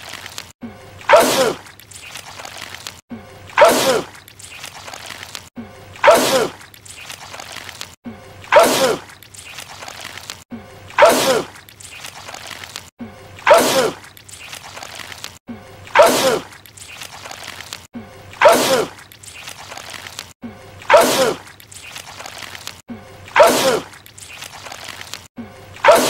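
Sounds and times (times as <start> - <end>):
man sneezing: 11.0 - 11.5, 16.0 - 16.5, 23.4 - 23.9.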